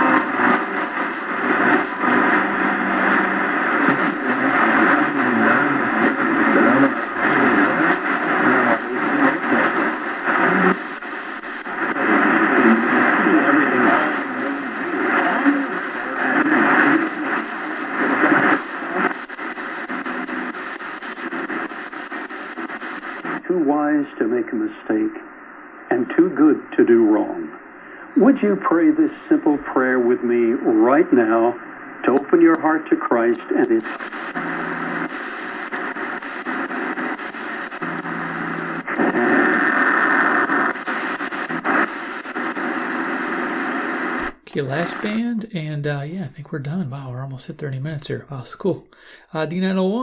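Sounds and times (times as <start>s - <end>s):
faint garbled broadcast voice: 0.0s - 19.2s, 44.2s - 50.0s
radio static hiss: 0.0s - 50.0s.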